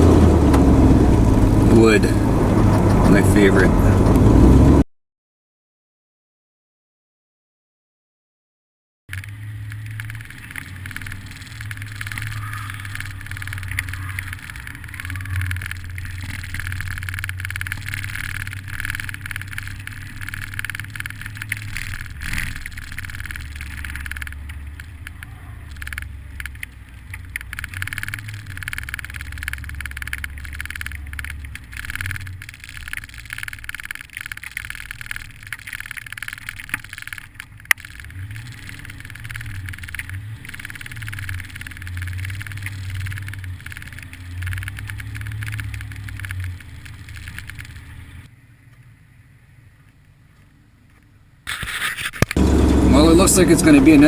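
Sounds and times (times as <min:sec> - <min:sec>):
road noise: 0:00.0 - 0:04.8, 0:09.1 - 0:54.0
vehicle engine driving: 0:00.0 - 0:04.8, 0:09.1 - 0:51.2, 0:52.2 - 0:54.0.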